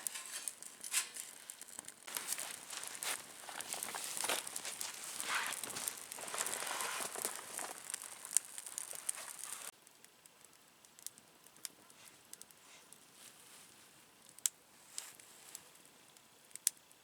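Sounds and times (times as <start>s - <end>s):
crinkling and rustling: 0.0s - 9.7s.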